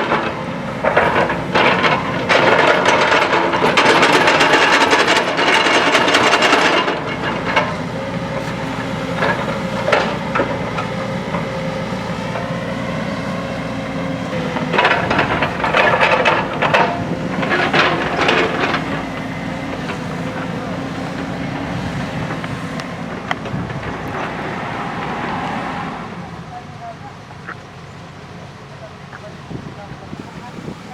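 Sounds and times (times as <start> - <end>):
diesel engine running: 0.0 - 30.9
bucket scraping earth and stones: 14.2 - 26.2.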